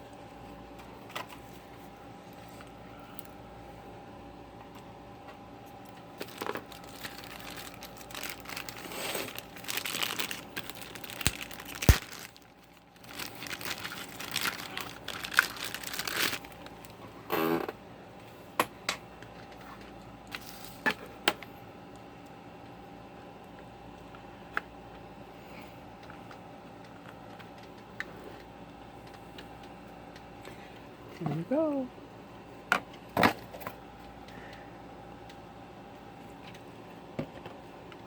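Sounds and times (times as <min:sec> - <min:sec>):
packaging rustling and tearing: 0:06.2 - 0:17.0.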